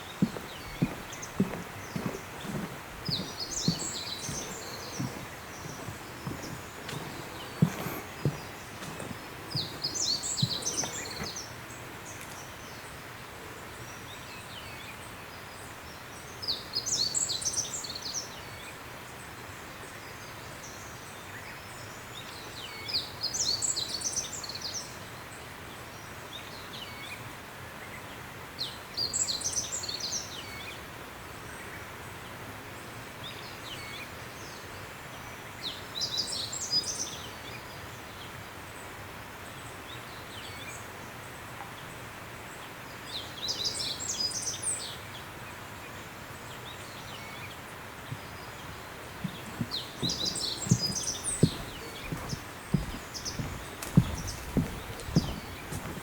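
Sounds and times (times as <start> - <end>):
footsteps on path: 0.0 - 11.4, 48.2 - 56.0
songbird singing: 0.0 - 18.7, 41.6 - 56.0
outdoor background noise: 0.0 - 56.0.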